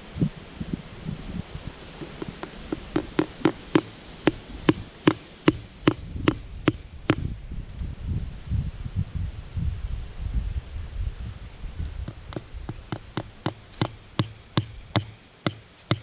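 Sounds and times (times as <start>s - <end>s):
hammer striking staple into wood: 2.0s - 7.3s, 12.1s - 16.0s.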